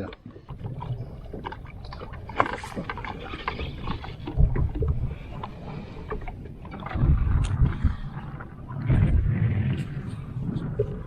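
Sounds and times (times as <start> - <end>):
low rumble: 3.0 - 11.0.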